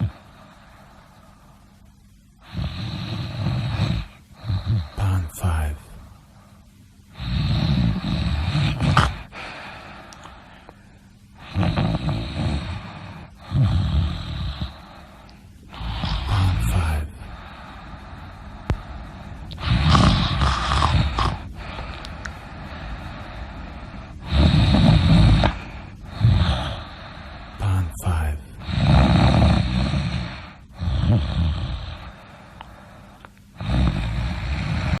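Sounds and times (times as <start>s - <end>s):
loud rough snores: 0.0s - 0.2s, 2.4s - 5.1s, 7.2s - 9.3s, 11.4s - 15.0s, 15.7s - 17.5s, 19.6s - 21.8s, 24.2s - 27.9s, 28.6s - 32.2s, 33.6s - 35.0s.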